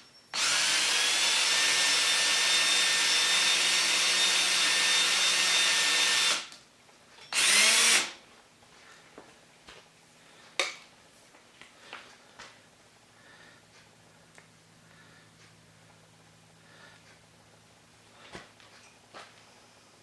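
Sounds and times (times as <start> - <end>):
power drill running: 0.3 - 6.5, 7.3 - 8.2.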